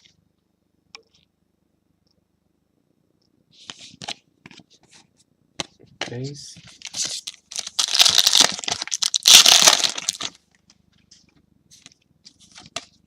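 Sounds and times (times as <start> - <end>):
foil wrapper crinkling and tearing: 6.8 - 10.4.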